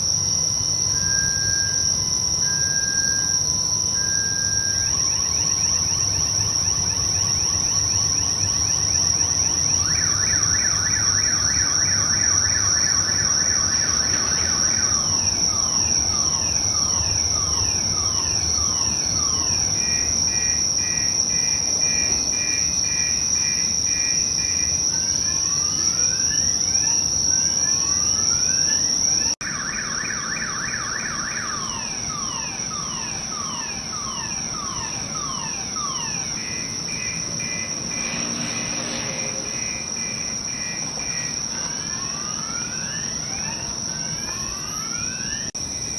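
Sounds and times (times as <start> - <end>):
car alarm cycling tones: 0.9 - 26.6, 27.6 - 45.6.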